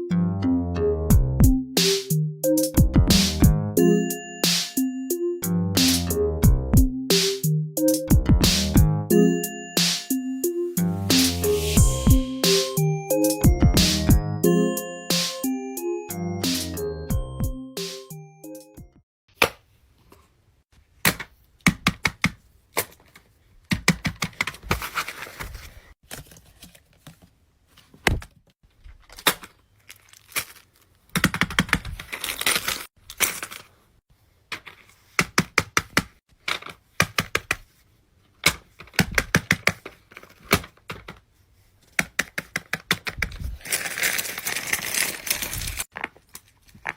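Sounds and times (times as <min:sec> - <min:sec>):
rustling and crinkling: 0:24.4 - 0:35.2, 0:39.6 - 0:42.0, 0:43.2 - 0:46.9.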